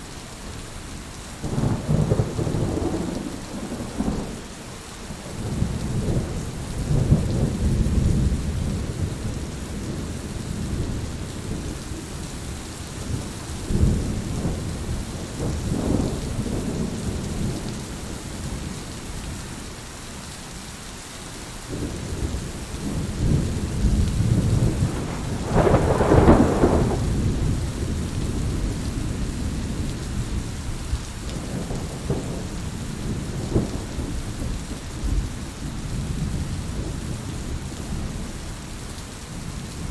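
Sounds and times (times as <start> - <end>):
steady rain falling: 0.0 - 39.9
thunder rumbling: 1.4 - 12.1, 13.1 - 17.7, 21.7 - 38.5
sharp thunderclap: 21.7 - 28.8.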